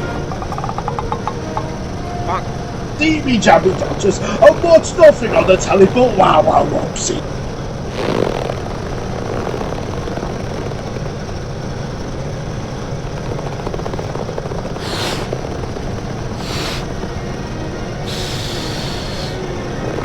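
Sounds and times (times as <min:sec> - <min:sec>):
steady mechanical rumble: 0:00.0 - 0:20.0
short whooshes: 0:14.8 - 0:15.4, 0:16.4 - 0:16.9.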